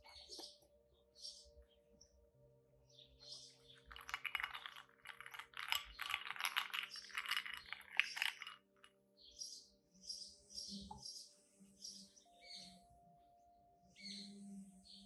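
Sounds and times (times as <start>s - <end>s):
dog crunching ice cubes: 3.8s - 8.7s.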